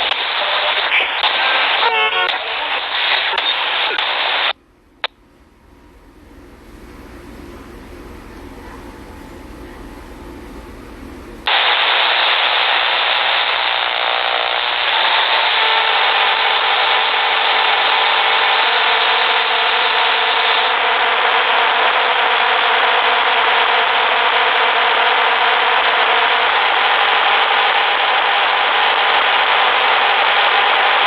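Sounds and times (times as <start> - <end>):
radio static hiss: 0.0 - 4.6, 11.4 - 31.0.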